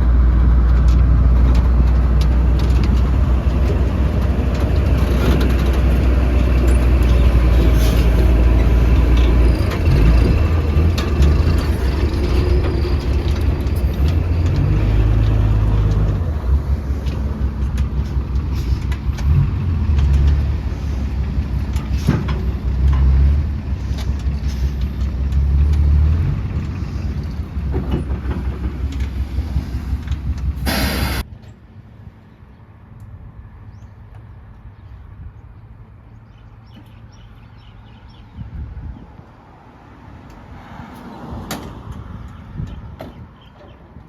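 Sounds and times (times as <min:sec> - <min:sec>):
heavy diesel machinery engine rumble: 0:00.0 - 0:32.4
brief hiss: 0:30.6 - 0:31.2.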